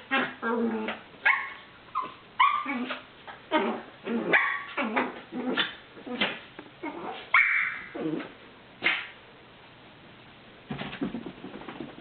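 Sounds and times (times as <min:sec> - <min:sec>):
small dog barking and yipping: 0:00.0 - 0:08.0
dog whining: 0:00.1 - 0:08.4.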